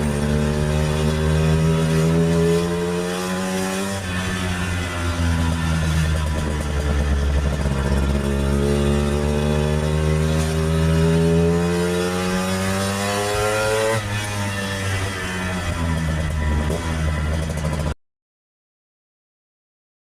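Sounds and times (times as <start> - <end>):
scooter engine accelerating: 0.0 - 18.0.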